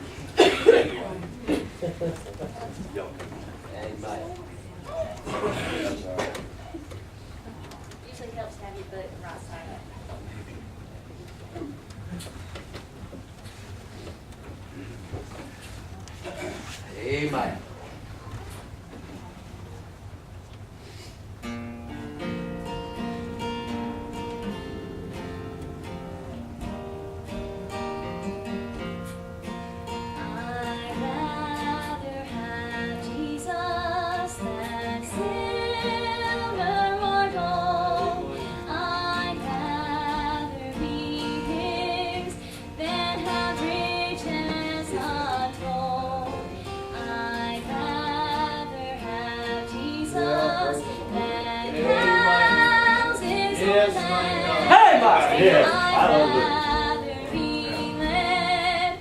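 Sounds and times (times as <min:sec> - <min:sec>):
acoustic guitar: 0:00.0 - 0:59.0
woman singing with vibrato: 0:30.2 - 0:59.0.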